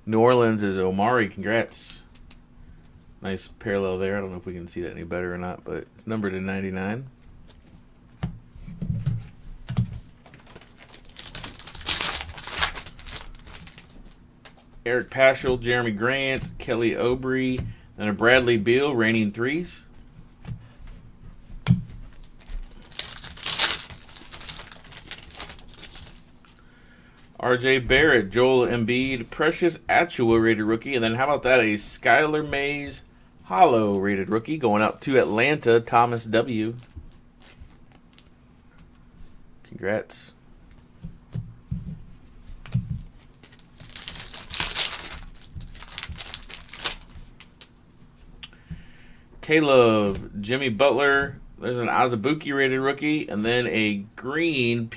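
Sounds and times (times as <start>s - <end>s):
wrapper tearing and crinkling: 10.4s - 14.2s, 22.1s - 26.3s, 43.4s - 47.7s.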